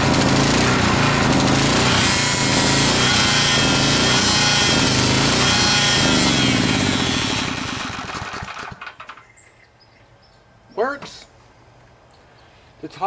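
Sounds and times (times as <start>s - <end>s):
generator engine running: 0.0s - 8.9s.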